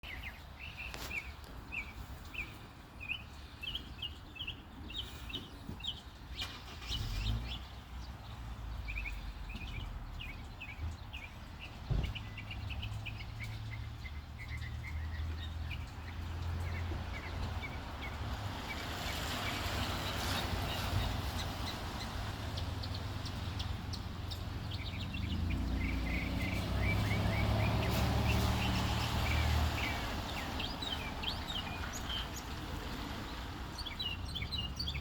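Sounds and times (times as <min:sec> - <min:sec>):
songbird chirping: 0:00.0 - 0:35.0
thump: 0:11.9 - 0:12.2.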